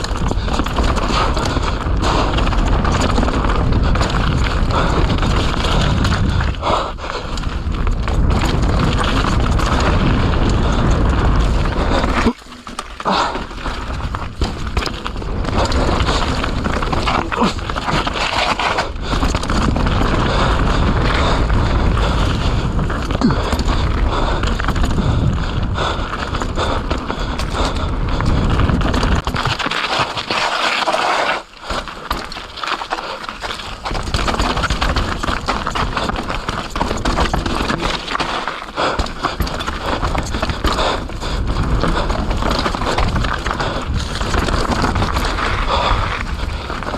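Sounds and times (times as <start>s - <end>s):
wind rumble on microphone: 0.0s - 12.4s, 13.2s - 29.7s, 38.8s - 46.9s
bike rattling and clattering: 0.0s - 46.9s
bike tyres scrabbling over dirt: 0.0s - 46.9s.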